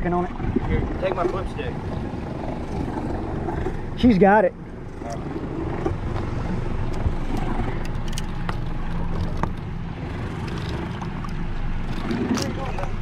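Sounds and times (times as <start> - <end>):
boat motor humming: 0.0 - 13.0
water noise: 0.0 - 13.0
wind: 0.0 - 13.0.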